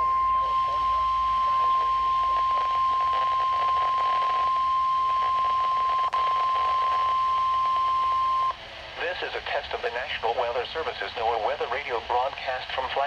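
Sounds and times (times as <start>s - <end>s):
high warning alarm tone: 0.0s - 8.6s.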